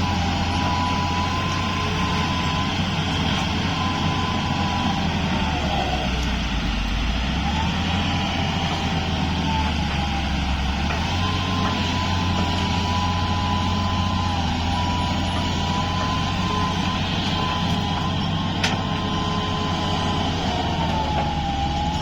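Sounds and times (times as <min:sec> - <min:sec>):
heavy diesel engine under load: 0:00.0 - 0:22.0.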